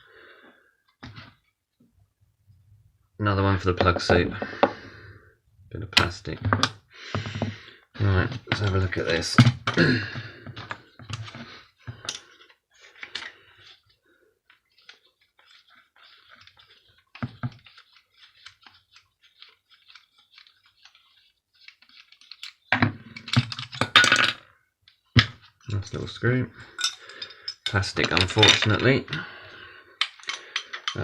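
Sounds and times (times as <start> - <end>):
metal parts clattering: 23.2 - 24.4, 26.7 - 28.8, 30.0 - 31.0
hand tools clicking and scraping: 26.6 - 31.0.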